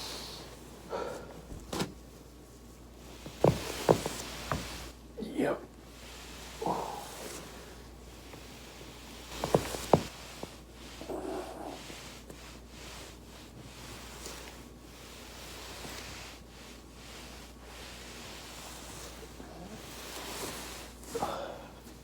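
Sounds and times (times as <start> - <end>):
body rustling on foam roller: 0.0 - 5.2, 5.8 - 22.0.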